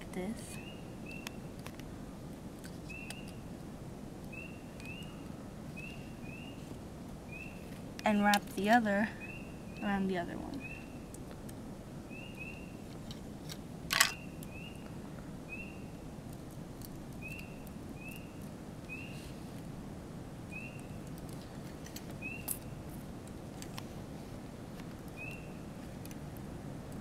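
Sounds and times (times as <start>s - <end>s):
low background noise: 0.0s - 27.0s
sharp clicks of handled wires: 1.1s - 1.9s, 2.5s - 3.4s, 16.2s - 19.7s, 20.8s - 23.9s, 24.7s - 27.0s.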